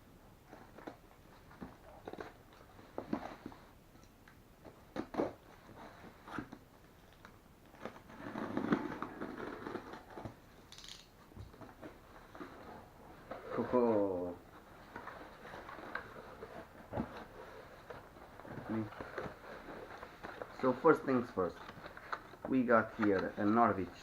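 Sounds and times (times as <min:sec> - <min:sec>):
cardboard box being opened: 0:07.8 - 0:10.4
packaging rustling: 0:11.6 - 0:24.0.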